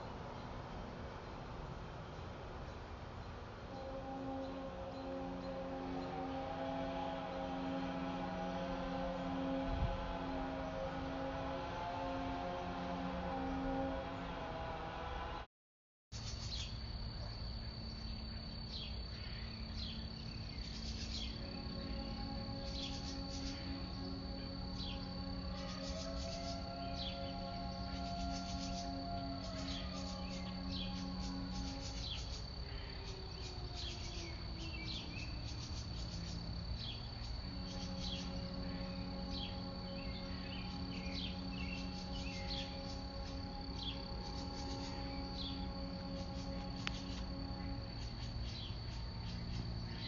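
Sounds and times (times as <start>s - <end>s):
low chord horn blast: 0.0s - 15.5s, 18.7s - 50.0s
high-pitched insect drone: 3.7s - 15.2s, 16.2s - 50.0s
birds chirping: 18.2s - 50.0s.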